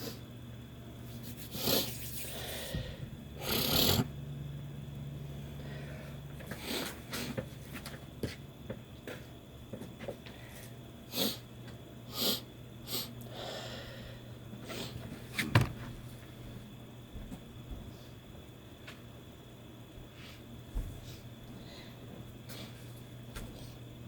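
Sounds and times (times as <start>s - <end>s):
steady low hum: 0.0s - 24.0s
person sniffing and snorting: 1.2s - 2.8s, 3.4s - 4.1s, 11.1s - 11.4s, 12.1s - 13.1s.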